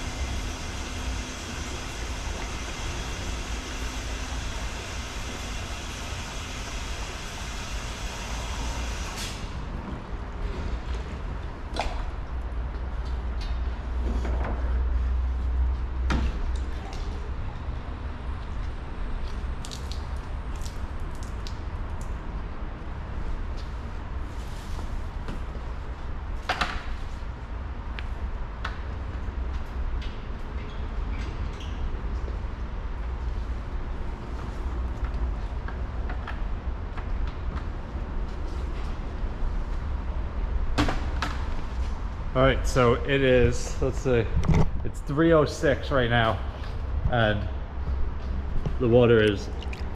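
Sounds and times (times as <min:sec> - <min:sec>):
water rushing from hose into tank: 0:00.0 - 0:09.2.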